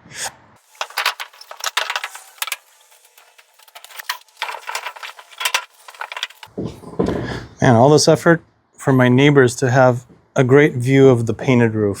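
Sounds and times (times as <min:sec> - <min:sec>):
scrubbing metal roofing panels: 0:00.6 - 0:06.5.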